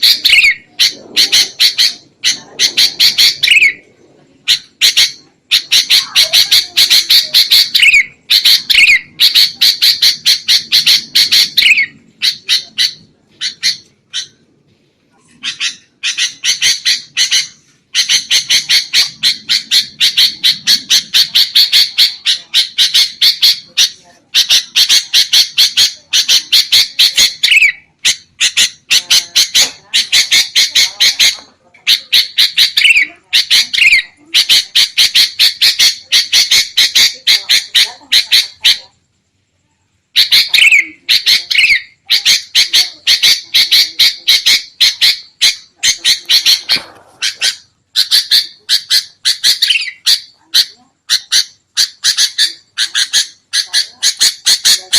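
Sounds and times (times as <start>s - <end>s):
bulbuls chattering: 0.0s - 39.2s, 40.0s - 54.9s.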